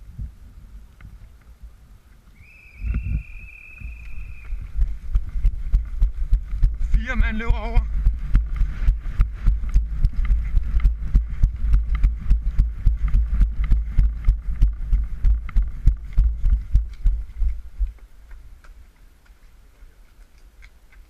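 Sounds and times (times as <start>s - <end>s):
running footsteps: 0.9s - 21.0s
microphone rumble from shaking: 2.8s - 18.0s.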